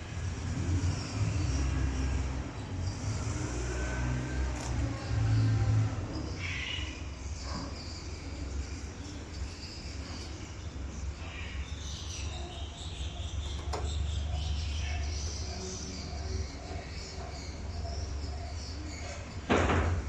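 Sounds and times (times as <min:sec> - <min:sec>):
faint high bird chirps: 0:04.9 - 0:19.5.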